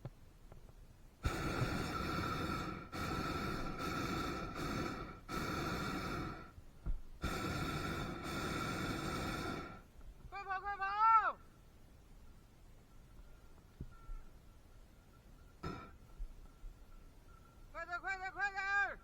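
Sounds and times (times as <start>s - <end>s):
propane burner hissing: 1.2s - 9.9s, 15.6s - 16.0s.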